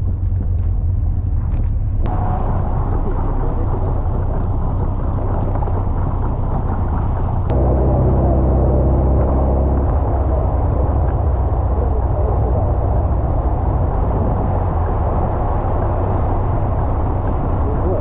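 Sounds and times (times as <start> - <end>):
car engine rumble: 0.0 - 18.0
road and wind noise: 0.0 - 18.0.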